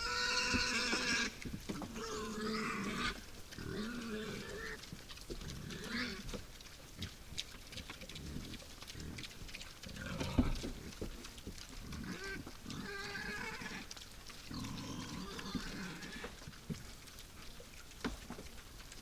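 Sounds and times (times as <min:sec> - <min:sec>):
wild boars grunting: 0:00.0 - 0:07.2, 0:07.9 - 0:17.5
high-pitched animal calls: 0:11.9 - 0:16.4.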